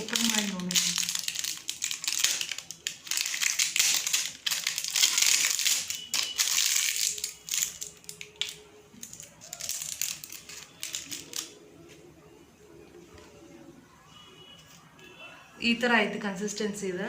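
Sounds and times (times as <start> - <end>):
plastic packaging crinkling: 0.0 - 11.6.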